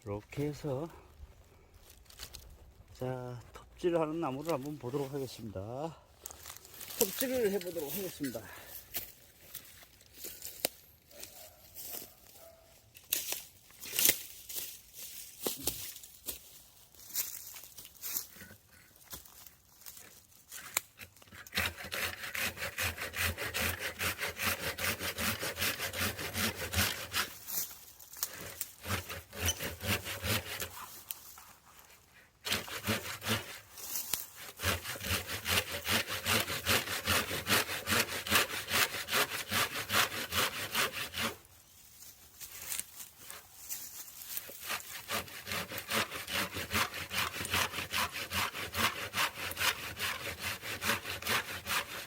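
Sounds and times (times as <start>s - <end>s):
hand saw cutting wood: 4.0s - 5.5s, 6.3s - 12.3s, 17.5s - 41.5s, 42.4s - 52.0s.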